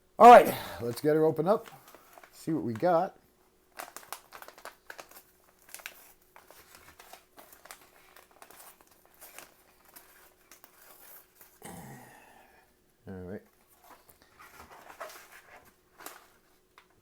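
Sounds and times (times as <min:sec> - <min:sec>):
meal pouch crinkling: 0:03.7 - 0:11.4.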